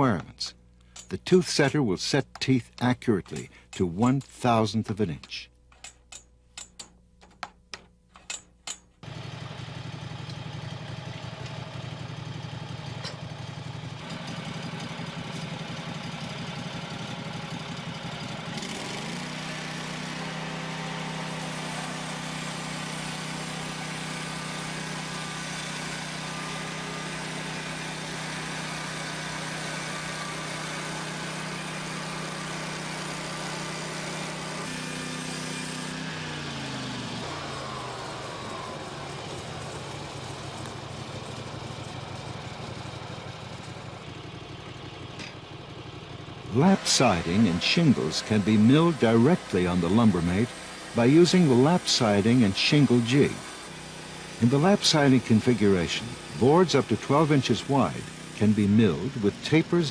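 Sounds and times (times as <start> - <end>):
small sawmill engine running: 9.0 - 59.9.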